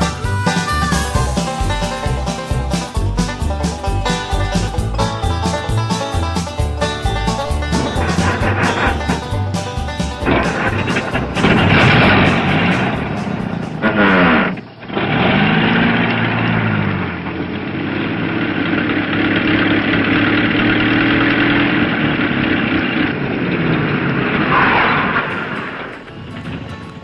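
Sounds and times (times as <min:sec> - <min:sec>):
vehicle engine revving: 0:00.0 - 0:27.0.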